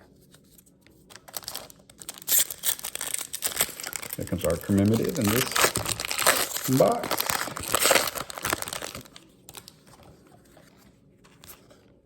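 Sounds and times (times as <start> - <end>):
card pack wrapper crinkling: 1.1 - 9.9.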